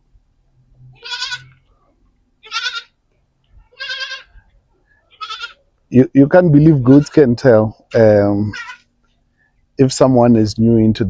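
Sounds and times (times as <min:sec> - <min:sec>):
young goat bleating: 0:00.9 - 0:01.7, 0:02.4 - 0:03.0, 0:03.6 - 0:05.8, 0:06.6 - 0:09.0.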